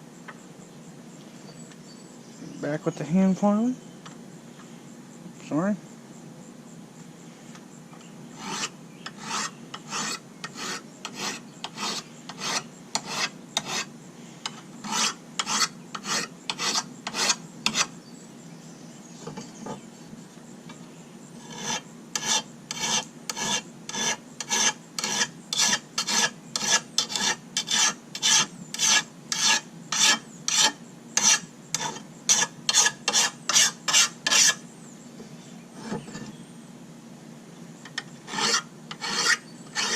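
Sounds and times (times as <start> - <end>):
metal file rasping on blade: 8.4 - 13.9, 14.5 - 17.9, 21.4 - 34.6, 35.8 - 36.3, 38.0 - 39.9.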